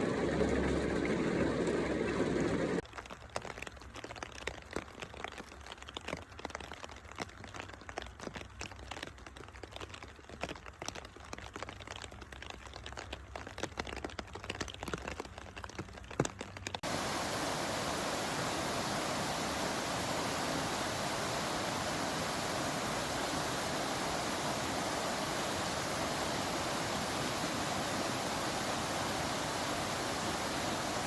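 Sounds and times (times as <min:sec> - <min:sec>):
raindrops pattering: 0:00.0 - 0:31.0
heavy rain rushing hiss: 0:16.8 - 0:31.0.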